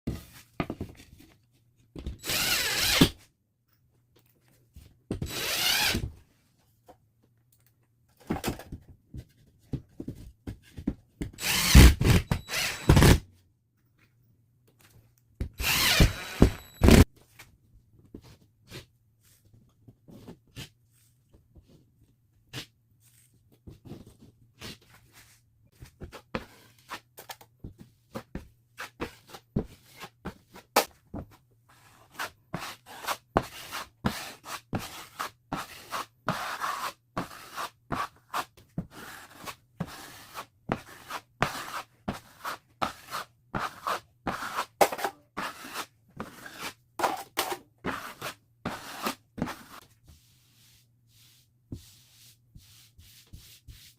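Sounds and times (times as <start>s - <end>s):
hand tool scraping drywall: 31.7s - 53.9s.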